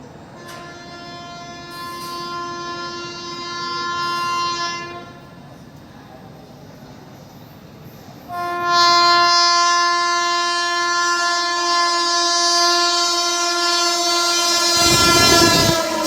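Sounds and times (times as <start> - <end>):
rush of passing train: 0.0 - 16.0
locomotive horn blast: 0.4 - 5.2, 8.3 - 16.0.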